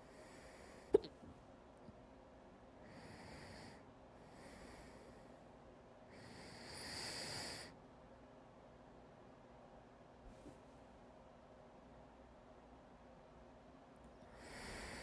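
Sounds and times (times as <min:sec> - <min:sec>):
person breathing with hiccups: 0:00.9 - 0:01.2.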